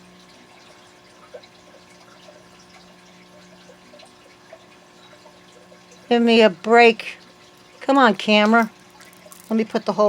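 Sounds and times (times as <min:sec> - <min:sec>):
glass pearls clicking: 0:09.0 - 0:09.6.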